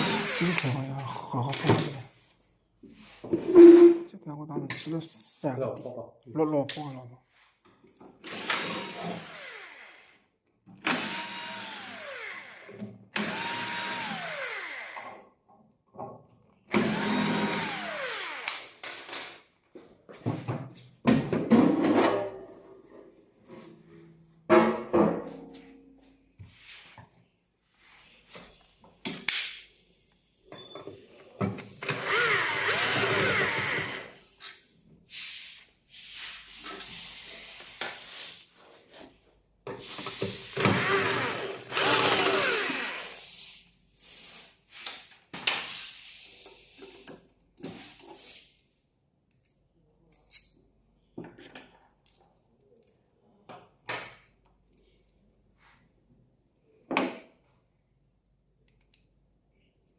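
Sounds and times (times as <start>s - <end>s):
electric screwdriver running: 0.0s - 0.7s, 8.3s - 10.2s, 10.9s - 15.0s, 16.7s - 18.7s, 31.8s - 34.2s, 40.4s - 43.2s.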